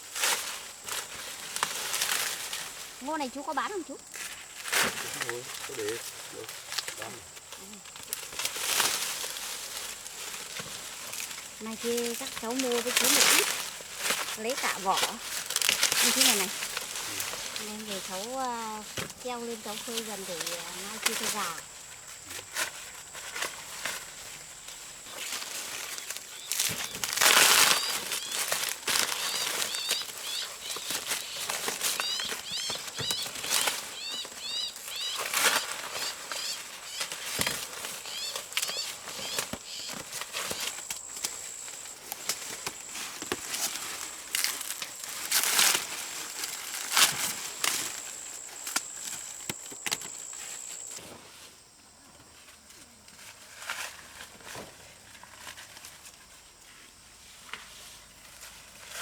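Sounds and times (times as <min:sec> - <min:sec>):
dry corn husks rustling: 0:00.0 - 0:59.0
bird chirps: 0:27.6 - 0:37.2, 0:38.0 - 0:40.8.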